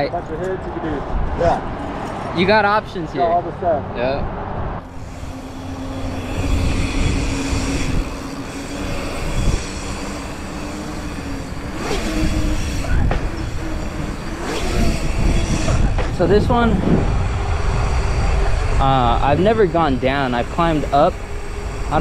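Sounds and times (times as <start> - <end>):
wind buffeting microphone: 4.0 - 22.0
humming whine from bike: 4.8 - 22.0.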